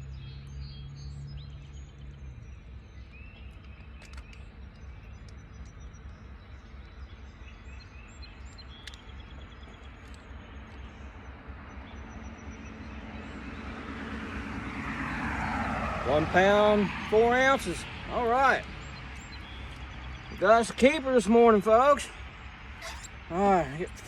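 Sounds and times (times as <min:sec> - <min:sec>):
short bird chirps: 0:22.8 - 0:23.3.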